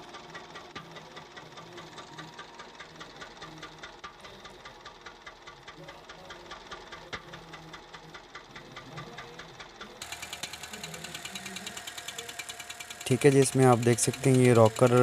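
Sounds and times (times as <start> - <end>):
car engine idling with ticking: 0.0 - 15.0
sharp engine click: 10.0 - 15.0.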